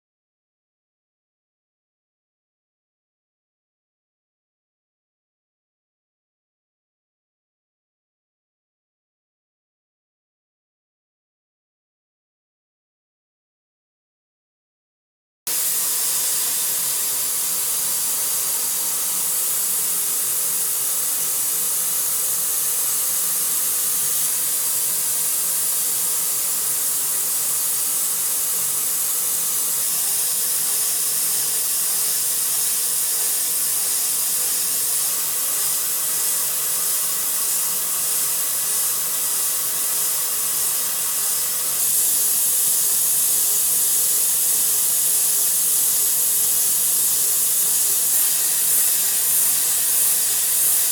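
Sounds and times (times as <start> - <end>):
milling machine cutting hiss: 15.5 - 50.9.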